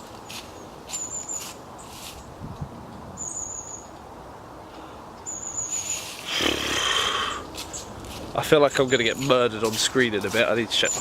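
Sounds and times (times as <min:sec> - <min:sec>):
soft rustles: 0:00.0 - 0:02.3, 0:05.8 - 0:06.3, 0:07.5 - 0:08.4
high thin wavering bird call: 0:05.3 - 0:06.2.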